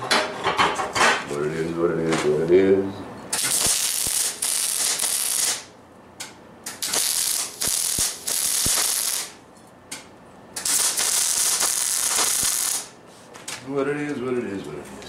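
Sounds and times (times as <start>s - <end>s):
welder arc crackling and hissing: 3.4s - 5.7s, 6.6s - 9.4s, 10.6s - 13.0s.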